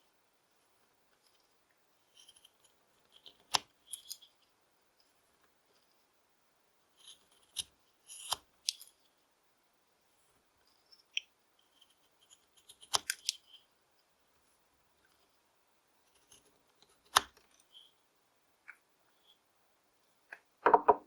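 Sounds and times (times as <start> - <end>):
knife scraping wood: 7.0 - 8.9.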